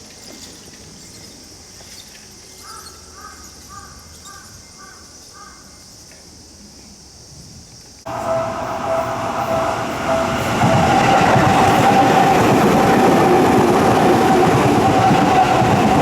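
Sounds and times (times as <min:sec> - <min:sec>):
high-pitched hiss: 0:00.0 - 0:12.4.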